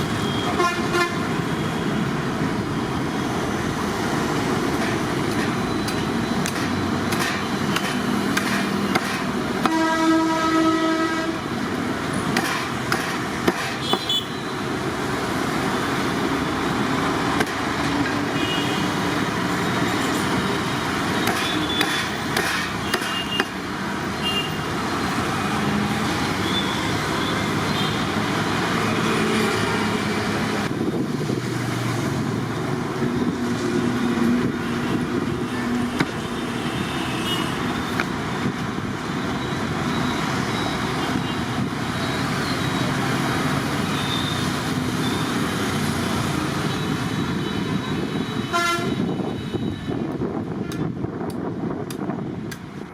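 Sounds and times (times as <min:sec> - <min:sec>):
street traffic: 0:00.0 - 0:52.9
vehicle horn: 0:00.2 - 0:01.2, 0:09.6 - 0:11.4, 0:48.4 - 0:49.2.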